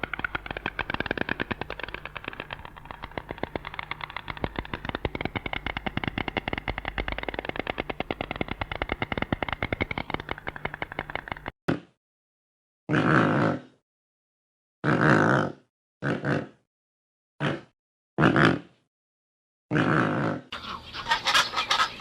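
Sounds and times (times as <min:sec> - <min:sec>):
bird rattling clicks: 0:00.0 - 0:11.5.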